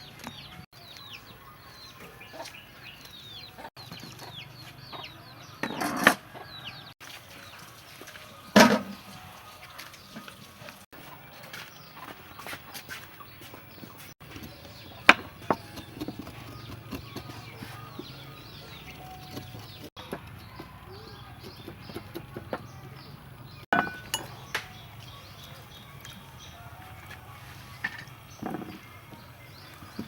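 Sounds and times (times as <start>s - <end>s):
chicks chirping: 0.0s - 5.8s, 10.9s - 27.3s
cooking utensils clinking: 23.7s - 25.7s.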